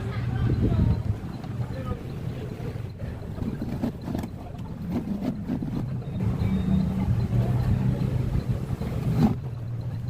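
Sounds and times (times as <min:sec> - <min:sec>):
engine humming: 0:00.0 - 0:10.0.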